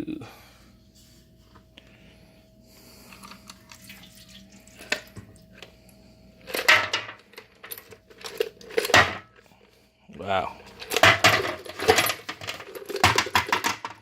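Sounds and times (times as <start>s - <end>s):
liquid sloshing and dripping: 3.2s - 5.5s.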